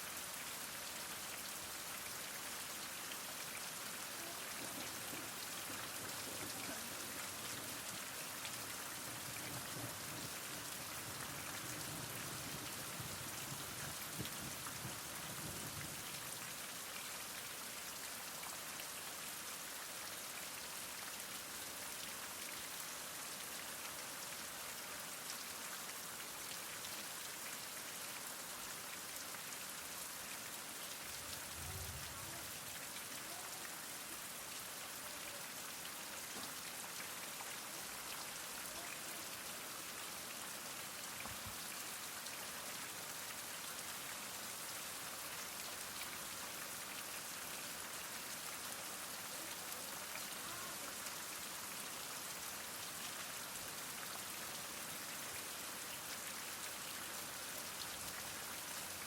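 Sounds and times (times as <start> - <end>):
heavy rain falling: 1.2 - 16.8, 29.7 - 43.8.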